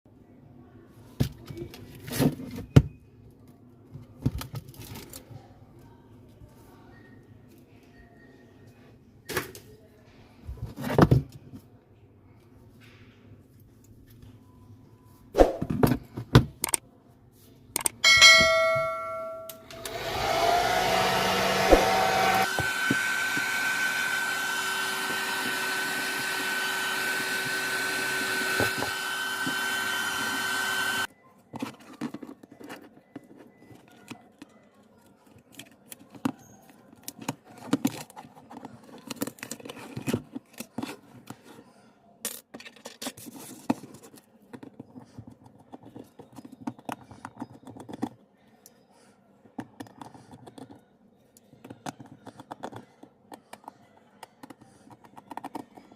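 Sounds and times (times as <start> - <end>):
short ringing tone: 18.0 - 19.8
hot air gun blowing: 19.7 - 31.1.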